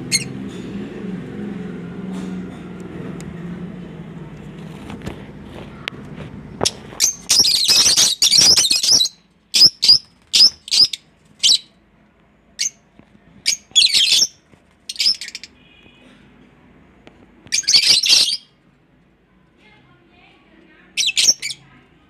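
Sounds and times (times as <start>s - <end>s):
lovebirds squawking and chirping: 0.1s - 0.3s, 6.6s - 11.7s, 13.4s - 15.6s, 17.5s - 18.5s, 21.0s - 21.6s.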